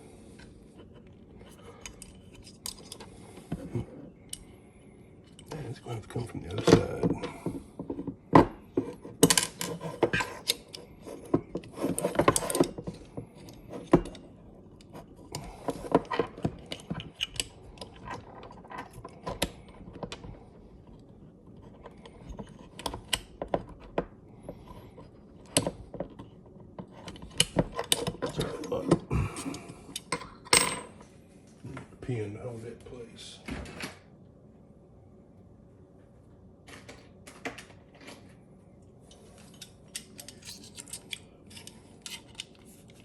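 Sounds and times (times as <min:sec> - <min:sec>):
small steel parts clicking and rattling: 0:39.1 - 0:43.0.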